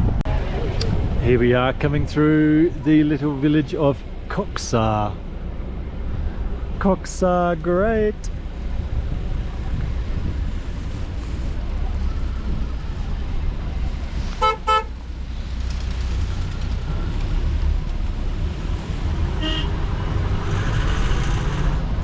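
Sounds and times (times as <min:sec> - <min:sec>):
vehicle engine and road rumble: 0:00.0 - 0:22.0
vehicle horn toots: 0:14.4 - 0:14.9, 0:19.4 - 0:19.8.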